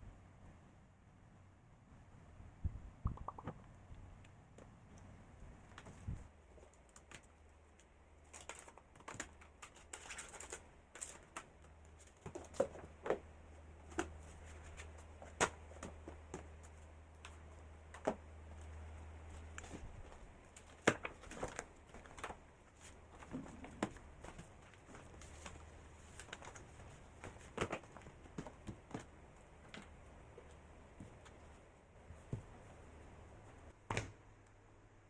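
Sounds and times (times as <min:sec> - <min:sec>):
low steady hum: 0:00.0 - 0:08.4.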